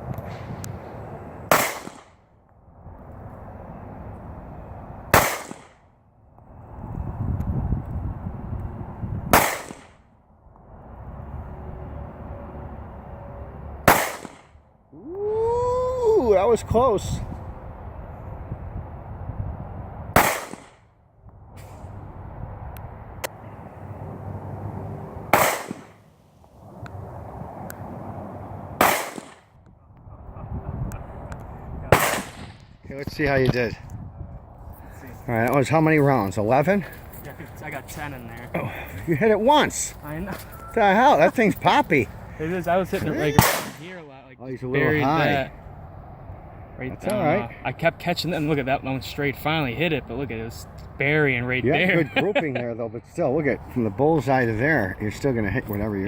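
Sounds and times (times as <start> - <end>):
pistol shots with echo: 1.5 - 2.2, 5.1 - 5.8, 9.3 - 10.0, 13.9 - 14.5, 20.2 - 20.8, 25.3 - 26.0, 28.8 - 29.4, 31.9 - 32.6, 43.4 - 43.9
faint distant shots: 5.1 - 5.8, 20.2 - 20.9, 25.3 - 26.0, 31.9 - 32.8, 43.4 - 44.0.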